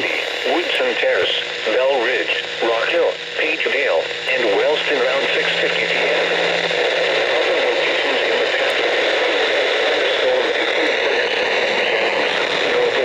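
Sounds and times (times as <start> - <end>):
radio static hiss: 0.0 - 13.0
low hum: 4.1 - 9.9.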